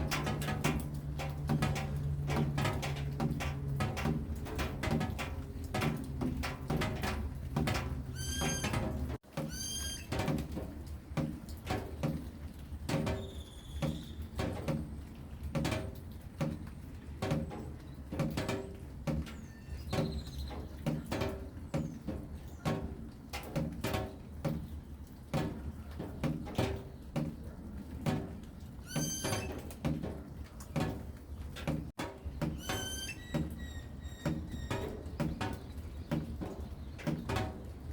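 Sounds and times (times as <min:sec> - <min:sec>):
rain dripping: 0:00.0 - 0:37.9
high wavering animal calls: 0:08.2 - 0:08.8, 0:09.5 - 0:10.2, 0:28.9 - 0:29.5, 0:32.5 - 0:34.9.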